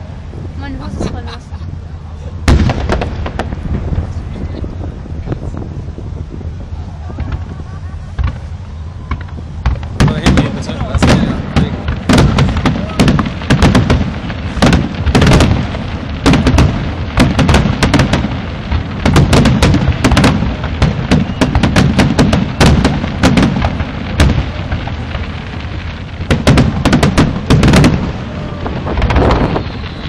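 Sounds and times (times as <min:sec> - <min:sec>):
fireworks bangs and crackles: 0:02.3 - 0:30.0
low rumble of shells bursting: 0:02.5 - 0:04.3, 0:08.2 - 0:30.0.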